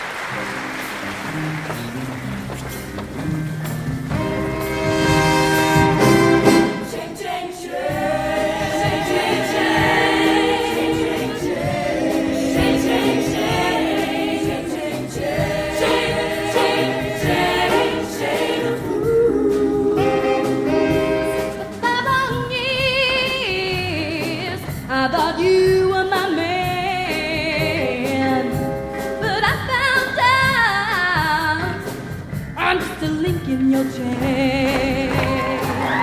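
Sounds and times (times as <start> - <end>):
choir singing in parts: 5.4 - 21.8, 34.2 - 36.0.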